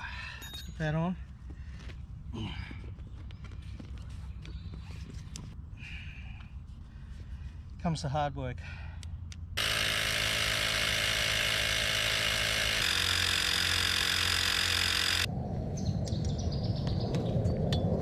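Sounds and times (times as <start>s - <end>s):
birds chirping: 1.5s - 5.6s
small motor running: 9.6s - 15.3s.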